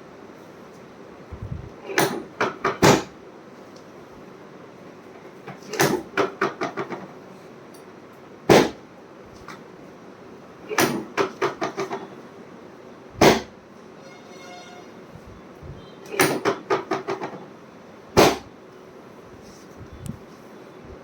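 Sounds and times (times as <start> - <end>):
sharp knocks: 13.2 - 13.5.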